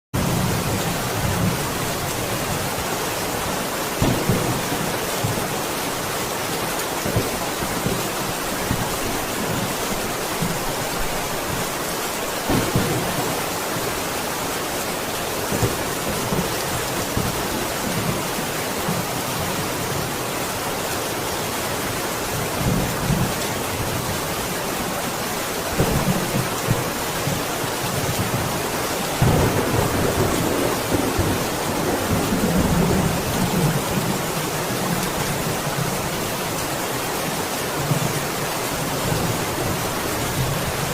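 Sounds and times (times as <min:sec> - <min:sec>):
steady rain falling: 0:00.1 - 0:40.9
thunder rumbling: 0:12.4 - 0:14.2, 0:25.7 - 0:35.1.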